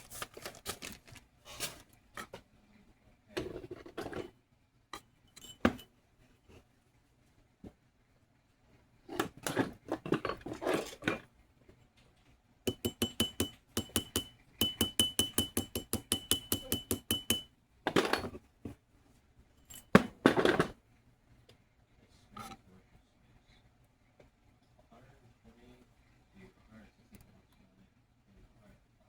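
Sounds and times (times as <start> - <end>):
metal tools clinking and scraping: 5.3 - 5.9, 19.6 - 20.7.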